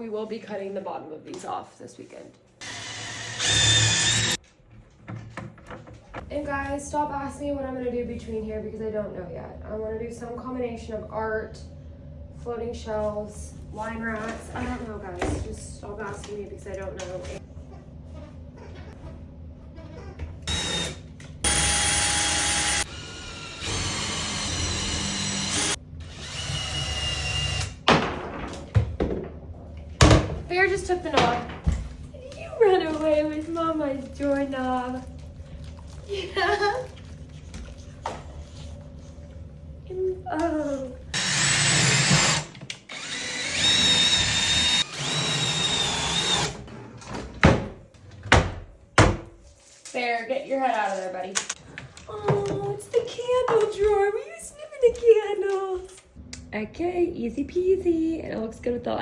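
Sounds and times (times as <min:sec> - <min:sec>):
power drill whining: 0:02.6 - 0:04.4, 0:20.4 - 0:27.8, 0:41.2 - 0:46.6.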